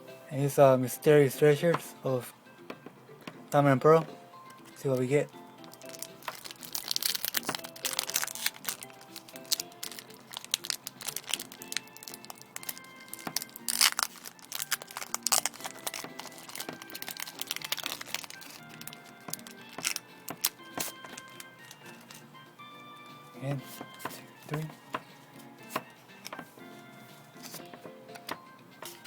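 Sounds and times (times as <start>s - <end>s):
background music with held notes: 0.0s - 29.0s
wrapper tearing and crinkling: 5.6s - 22.2s.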